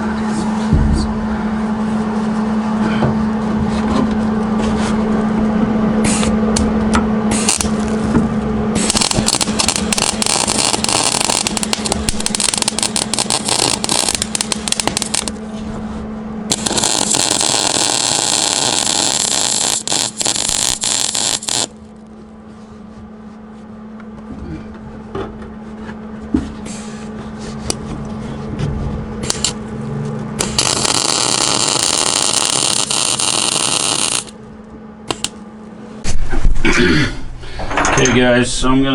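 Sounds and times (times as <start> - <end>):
steady low hum: 0.0 - 38.9
welder arcing crackling hiss: 6.0 - 6.3, 7.3 - 8.0, 8.8 - 15.4, 16.5 - 21.8, 29.2 - 29.6, 30.4 - 34.4, 35.1 - 35.4.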